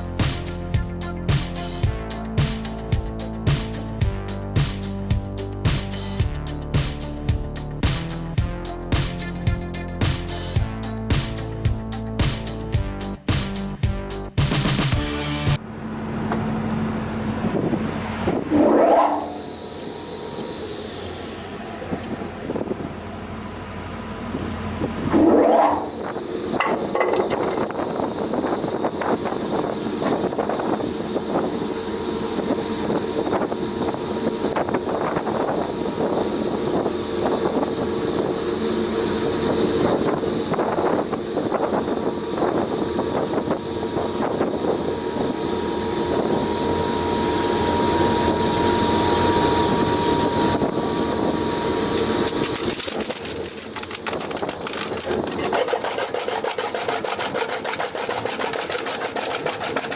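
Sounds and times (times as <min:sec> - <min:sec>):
wood chipper running: 0:51.6 - 0:59.9.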